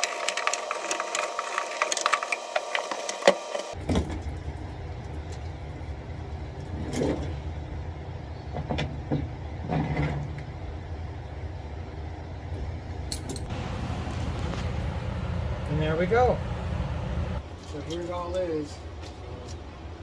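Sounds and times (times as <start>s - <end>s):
electric fan humming: 0.0s - 3.8s, 13.4s - 17.5s.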